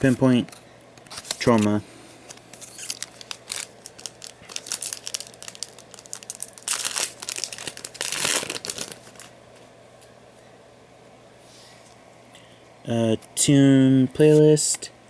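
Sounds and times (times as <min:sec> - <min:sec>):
foil wrapper crinkling: 0:01.1 - 0:01.7, 0:02.3 - 0:09.4
foil pack tearing: 0:02.5 - 0:09.3.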